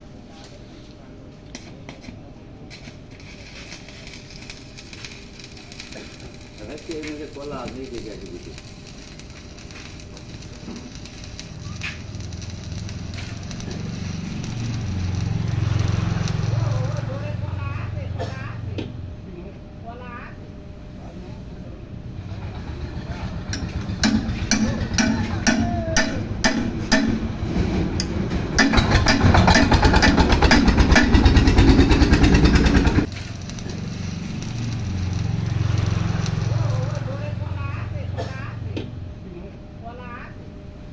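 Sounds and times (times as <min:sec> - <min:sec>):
low machine hum: 0:01.0 - 0:40.9
welding arc crackling: 0:01.5 - 0:18.2, 0:22.2 - 0:38.6
engine knocking: 0:22.4 - 0:25.2, 0:28.6 - 0:33.1.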